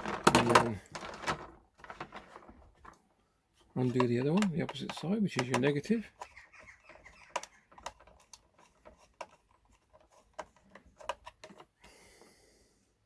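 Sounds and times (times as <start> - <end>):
screwdriver clicks and taps: 3.9 - 6.3.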